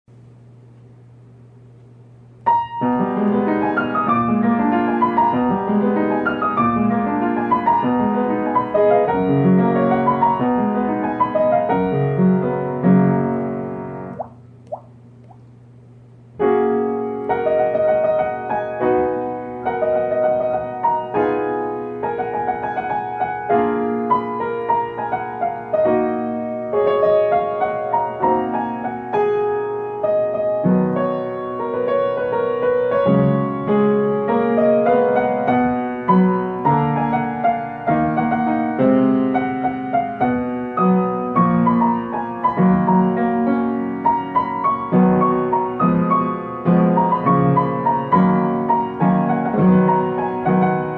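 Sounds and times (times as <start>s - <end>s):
solo piano pop ballad: 16.4s - 50.9s.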